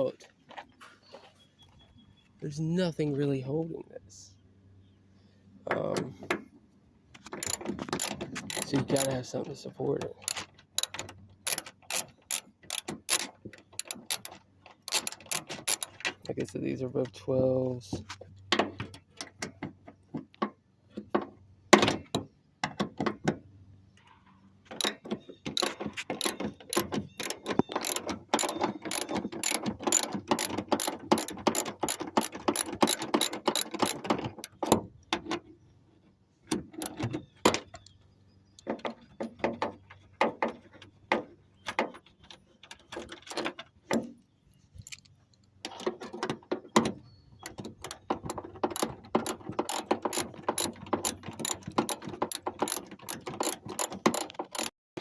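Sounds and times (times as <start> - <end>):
ratchet wrench clicking: 7.4 - 9.2, 10.2 - 14.3, 14.9 - 15.9, 25.6 - 34.6, 47.8 - 54.7.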